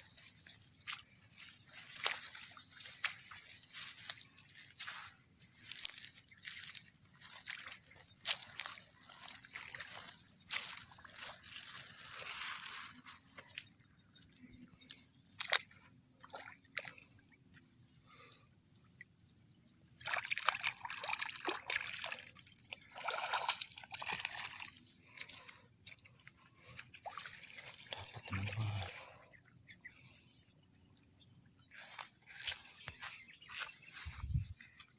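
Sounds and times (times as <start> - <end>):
shallow water sloshing and splashing: 20.0 - 28.3.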